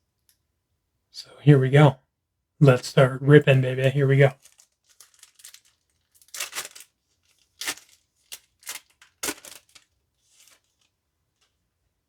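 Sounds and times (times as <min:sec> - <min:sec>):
wrapper being torn open: 0:04.4 - 0:10.9.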